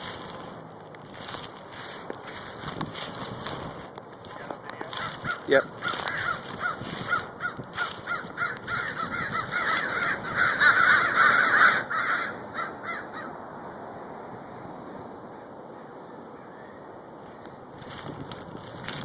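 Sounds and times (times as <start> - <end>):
bird calling harsh notes: 4.2 - 13.3.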